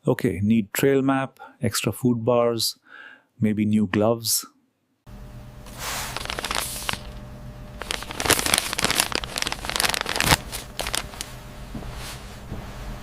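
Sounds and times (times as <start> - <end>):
steady low hum: 5.1 - 13.0
packaging crinkling and rustling: 5.7 - 7.2, 7.8 - 11.4.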